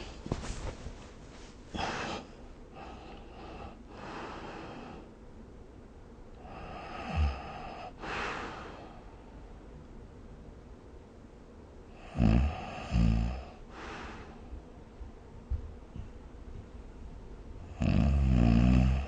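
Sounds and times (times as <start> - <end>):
person snoring: 6.4 - 8.9, 11.9 - 14.4, 17.7 - 19.0.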